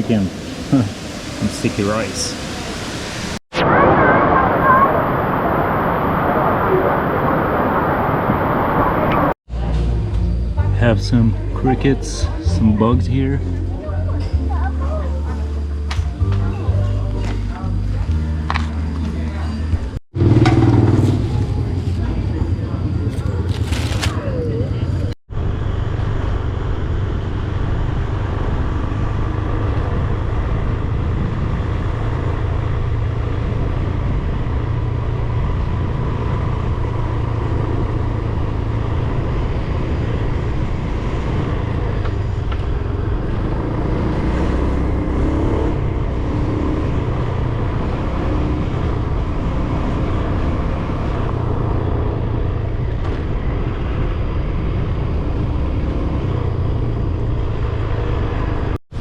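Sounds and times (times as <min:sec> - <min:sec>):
road noise: 0:00.0 - 0:59.0
motor scooter engine: 0:20.2 - 0:24.0.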